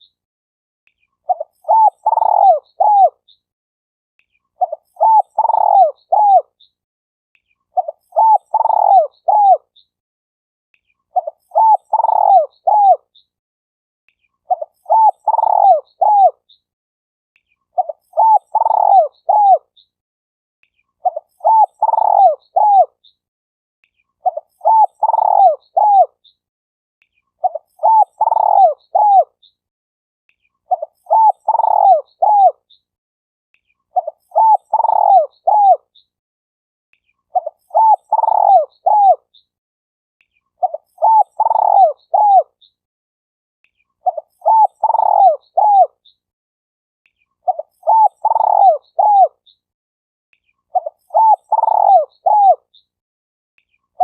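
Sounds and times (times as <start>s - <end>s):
dove cooing: 1.3s - 3.2s, 4.6s - 6.5s, 7.8s - 9.6s, 11.2s - 13.0s, 14.5s - 16.4s, 17.8s - 19.6s, 21.0s - 22.9s, 24.2s - 26.1s, 27.4s - 29.3s, 30.7s - 32.6s, 34.0s - 35.8s, 37.4s - 39.2s, 40.6s - 42.5s, 44.0s - 46.0s, 47.5s - 49.4s, 50.8s - 52.6s.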